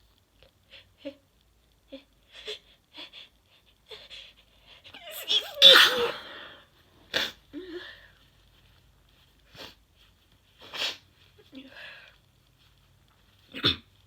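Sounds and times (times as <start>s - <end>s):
woman sneezing: 5.2s - 6.4s
woman sniffing: 10.6s - 11.1s.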